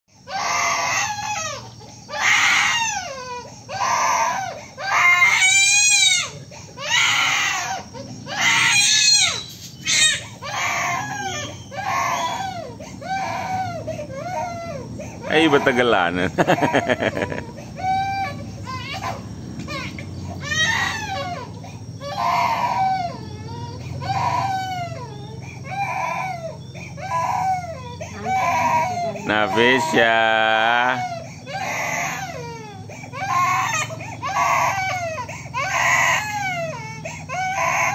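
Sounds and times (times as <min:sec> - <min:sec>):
baby crying hard: 0:00.3 - 0:37.9.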